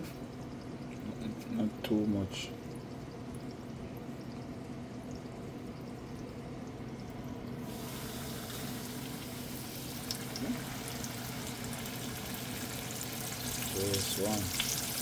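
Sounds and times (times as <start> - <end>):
fish sizzling in hot oil: 7.6 - 15.0.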